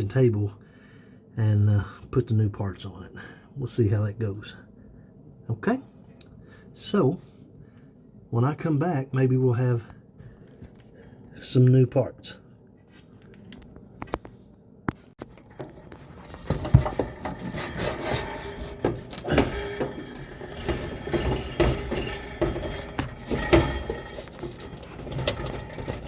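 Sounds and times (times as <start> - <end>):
sheet metal rubbing and clinking: 15.2 - 26.0.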